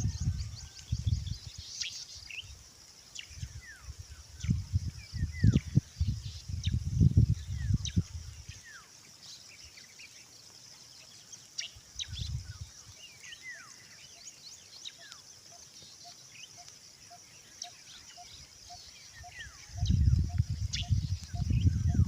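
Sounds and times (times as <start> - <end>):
birds chirping: 7.4 - 22.0.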